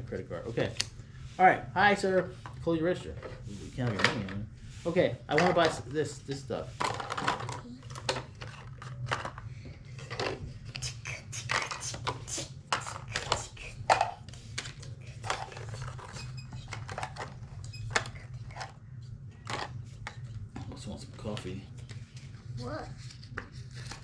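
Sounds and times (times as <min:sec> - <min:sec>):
plastic toys clicking and clattering: 0:11.4 - 0:18.8.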